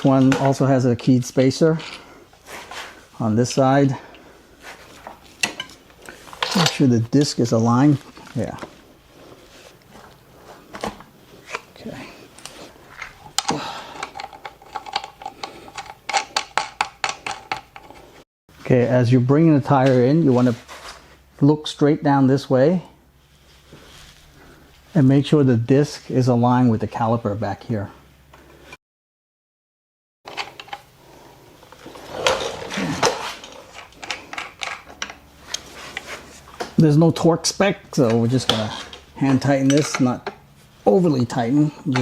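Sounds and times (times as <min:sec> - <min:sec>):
metal parts clicking and clacking: 0:05.4 - 0:06.8, 0:12.4 - 0:18.0, 0:33.0 - 0:35.6, 0:38.1 - 0:40.4.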